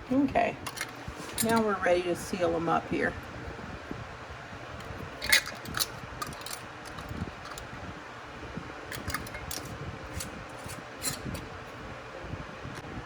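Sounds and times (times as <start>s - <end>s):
steady fan-like hum: 0.0s - 13.0s
metal lids clicking on glass jars: 0.6s - 1.7s, 4.8s - 7.7s, 8.9s - 11.5s.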